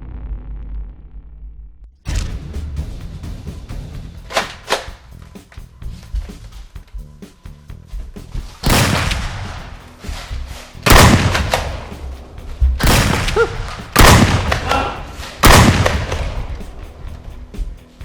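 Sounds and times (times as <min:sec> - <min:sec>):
loud booming hits: 0:02.1 - 0:04.6, 0:08.6 - 0:09.8, 0:10.8 - 0:17.1.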